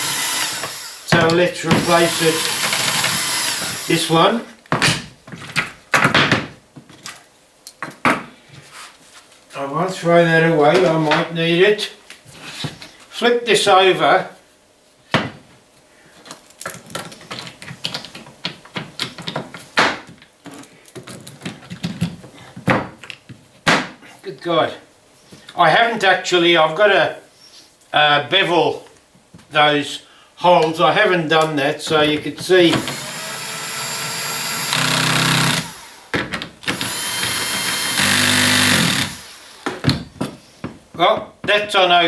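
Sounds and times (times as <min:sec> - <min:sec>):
power drill drilling: 0:00.0 - 0:04.1, 0:32.7 - 0:39.8.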